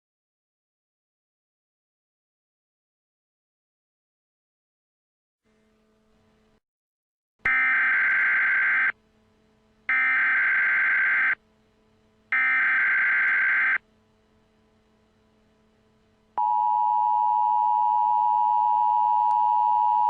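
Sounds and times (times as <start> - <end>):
harsh buzzy electronic data bursts: 7.5 - 9.0, 9.9 - 11.4, 12.3 - 13.8.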